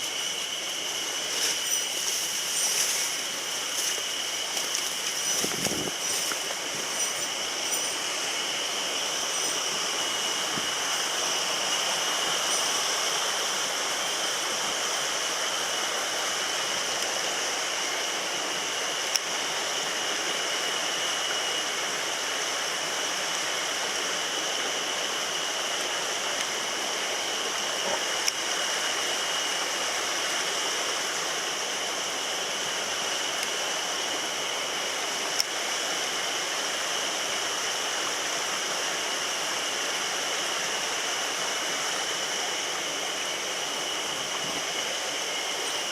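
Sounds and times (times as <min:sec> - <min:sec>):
stream rushing over rocks: 0:00.0 - 0:45.9.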